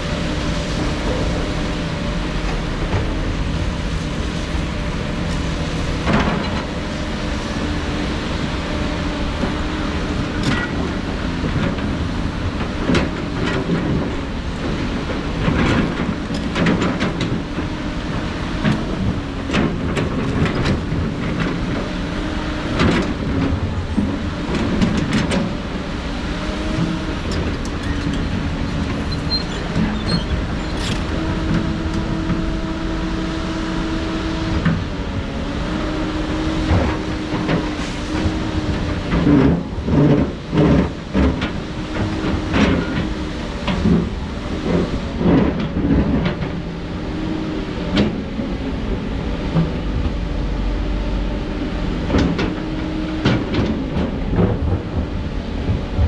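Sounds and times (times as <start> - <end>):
heavy diesel machinery running: 0.0 - 56.0.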